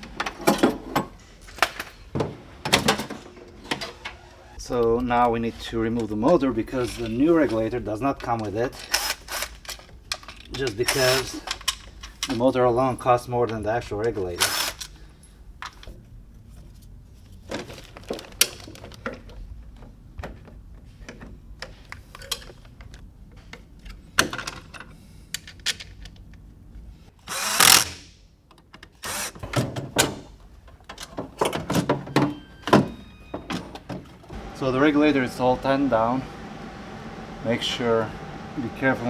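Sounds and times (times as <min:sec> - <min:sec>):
tools and metal parts clattering: 0:00.0 - 0:16.0, 0:17.2 - 0:26.6, 0:28.5 - 0:34.4
power tool running: 0:27.3 - 0:27.9, 0:34.3 - 0:39.0.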